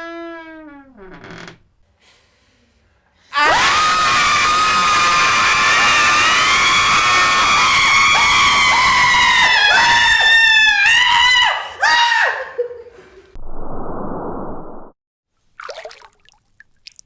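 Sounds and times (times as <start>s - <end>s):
ghostly female shriek and cackling: 3.3s - 12.6s.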